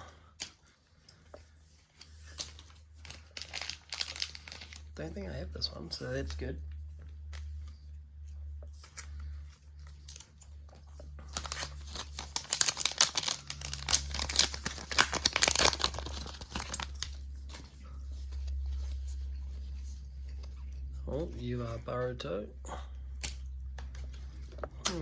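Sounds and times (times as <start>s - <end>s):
foil pack crinkling: 1.9s - 6.4s, 8.8s - 21.3s.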